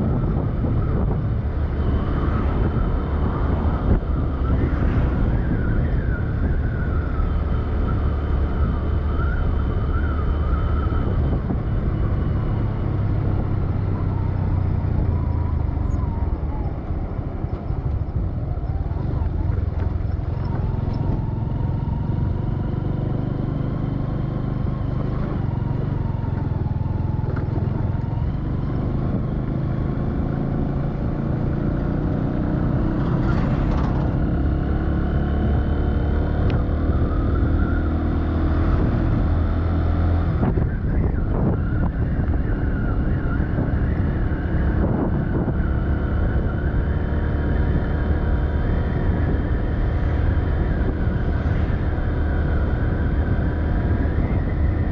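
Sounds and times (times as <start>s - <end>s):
road and wind rumble: 0.0s - 54.9s.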